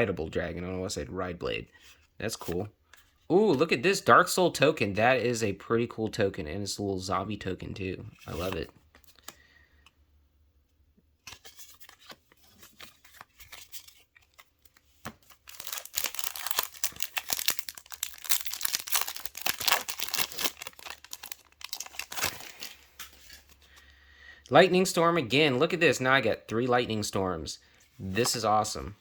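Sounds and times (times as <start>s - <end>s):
foil wrapper tearing and crinkling: 15.3s - 23.5s.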